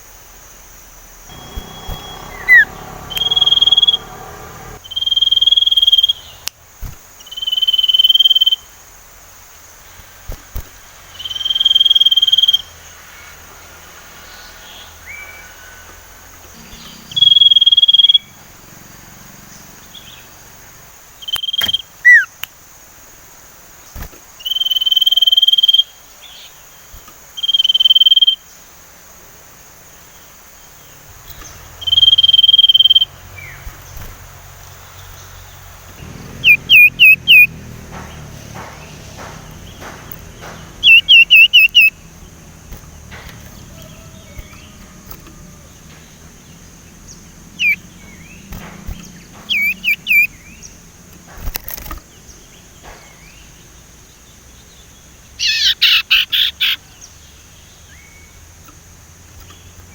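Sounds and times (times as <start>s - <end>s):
bird whistling high notes: 1.3s - 4.2s, 16.6s - 18.3s, 40.8s - 42.0s
bird sliding chirps: 1.3s - 6.3s, 16.4s - 20.2s, 31.3s - 35.4s, 36.0s - 37.6s, 38.3s - 50.8s, 55.4s - 56.8s.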